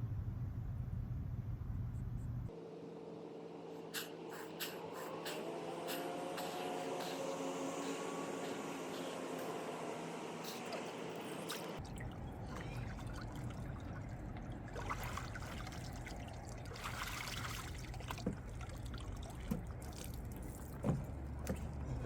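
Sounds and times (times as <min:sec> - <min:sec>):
water trickling and lapping: 0:04.0 - 0:22.0.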